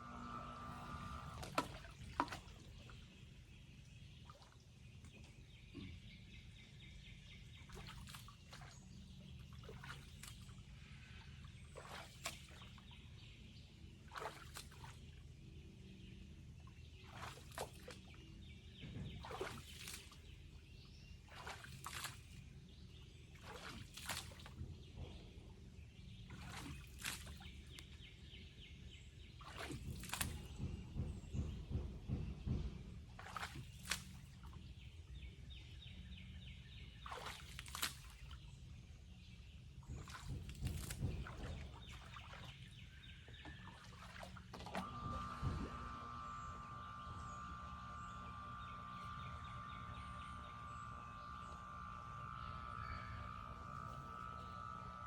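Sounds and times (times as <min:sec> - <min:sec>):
low steady rumble: 0:00.0 - 0:14.1, 0:14.7 - 0:55.0
sharp splashes: 0:00.3 - 0:03.1, 0:07.6 - 0:13.0, 0:13.9 - 0:15.2, 0:16.9 - 0:18.2, 0:19.1 - 0:22.4, 0:23.3 - 0:24.6, 0:26.3 - 0:27.8, 0:29.3 - 0:30.6, 0:33.1 - 0:34.6, 0:37.0 - 0:38.5, 0:39.8 - 0:46.0.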